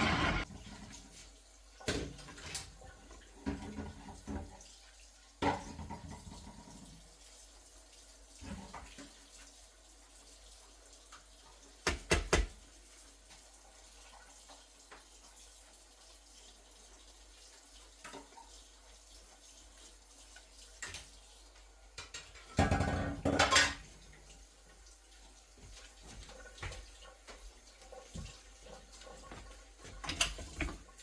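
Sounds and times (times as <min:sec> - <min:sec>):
kitchen items clattering: 0:22.0 - 0:24.1.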